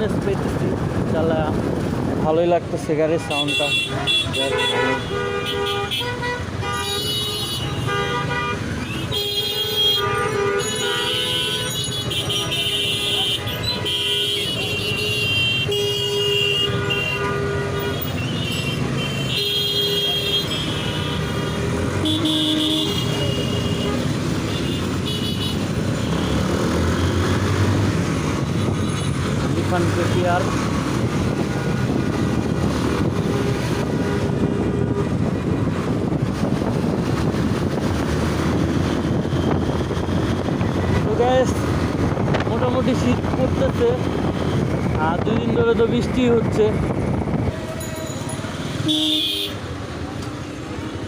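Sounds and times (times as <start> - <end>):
rumble of traffic: 0.0 - 51.0
vehicle horns honking: 3.2 - 27.4, 47.8 - 49.6.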